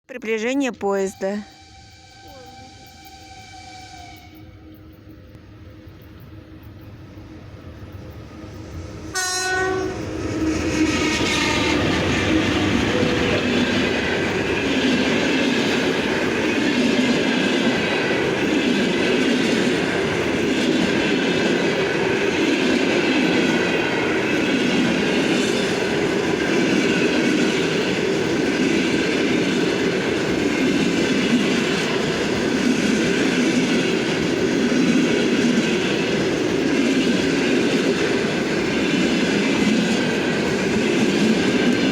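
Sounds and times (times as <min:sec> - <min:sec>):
locomotive horn blast: 0:01.4 - 0:04.7, 0:09.1 - 0:13.5
train wheels rumbling over rails: 0:01.4 - 0:41.9.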